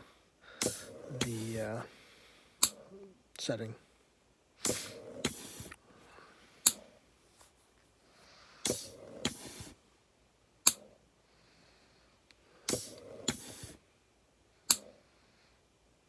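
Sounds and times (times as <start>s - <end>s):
ventilator air rush: 0.0s - 2.8s, 4.6s - 6.8s, 8.2s - 9.8s, 12.6s - 13.8s
ventilator sharp click: 0.6s - 1.7s, 4.6s - 5.8s, 8.7s - 9.8s, 12.7s - 13.8s.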